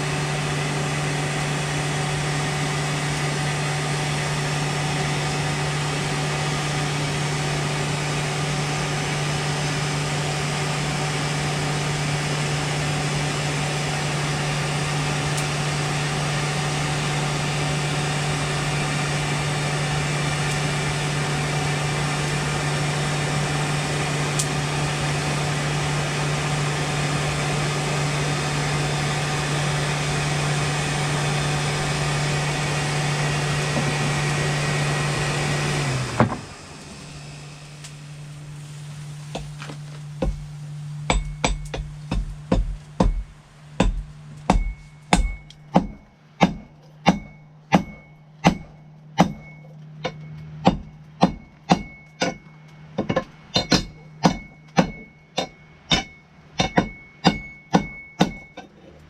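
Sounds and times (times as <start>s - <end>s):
machine hum: 0.0s - 59.0s
hammer striking steel on anvil: 41.1s - 58.8s.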